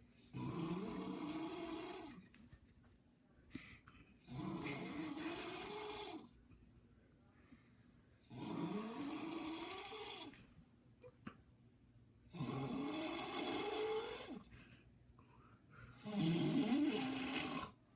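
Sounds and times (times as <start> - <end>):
man snoring: 12.4 - 14.4, 16.0 - 17.8.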